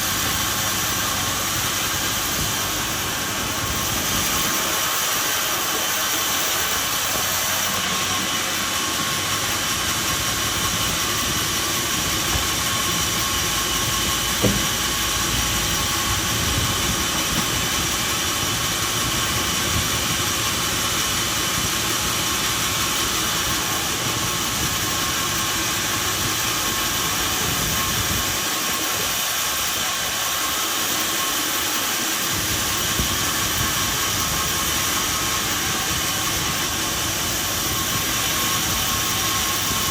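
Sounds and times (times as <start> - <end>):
sawmill machinery hissing: 0.0 - 39.9
sharp knock: 14.4 - 14.8.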